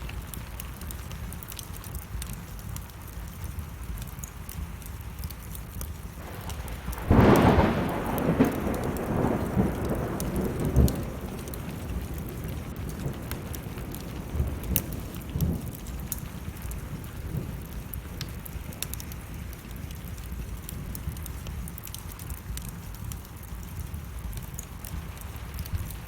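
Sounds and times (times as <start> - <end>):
steady rain: 0.0 - 26.0
wood fire crackling and popping: 0.0 - 26.0
low rumble of thunder: 6.1 - 26.0.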